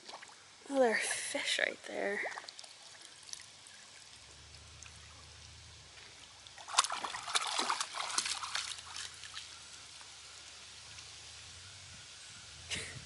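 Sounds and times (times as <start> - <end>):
dog splashing through water: 6.2 - 9.6.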